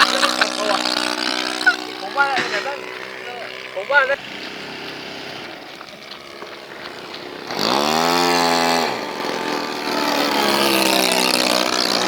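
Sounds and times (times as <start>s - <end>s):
model aircraft engine revving: 0.0s - 12.0s.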